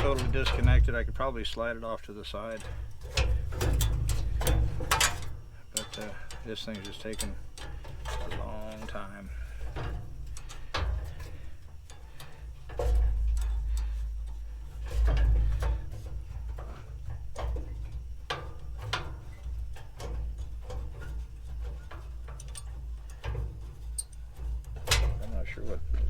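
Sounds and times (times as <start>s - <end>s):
low rumble: 0.0s - 5.0s, 25.4s - 26.0s
hand tools clanking on metal: 0.0s - 26.0s.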